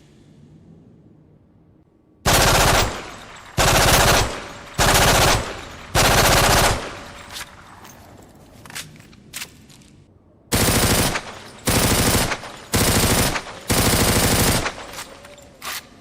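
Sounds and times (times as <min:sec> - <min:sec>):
automatic gunfire bursts: 0:02.3 - 0:07.2, 0:10.5 - 0:15.1.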